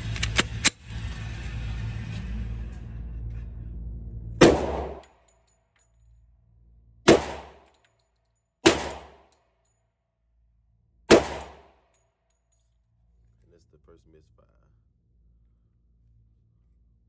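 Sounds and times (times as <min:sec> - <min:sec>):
pistol shots: 0:04.4 - 0:05.0, 0:07.1 - 0:07.7, 0:08.6 - 0:09.3, 0:11.1 - 0:11.8.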